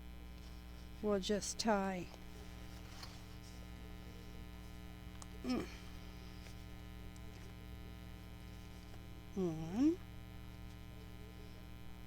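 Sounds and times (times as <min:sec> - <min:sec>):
electrical mains hum: 0:00.0 - 0:12.0
person murmuring: 0:05.4 - 0:05.9, 0:09.4 - 0:10.0.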